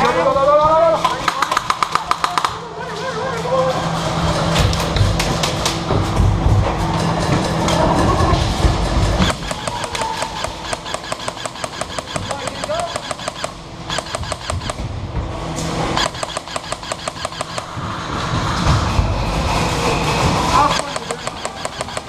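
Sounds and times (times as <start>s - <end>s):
airsoft rifle rapid bursts: 9.2s - 14.8s, 16.0s - 17.8s, 20.7s - 22.0s.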